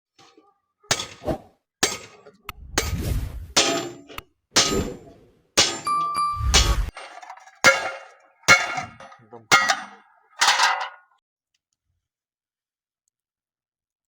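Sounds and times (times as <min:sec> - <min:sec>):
hammer clanging on steel: 0:03.6 - 0:11.0.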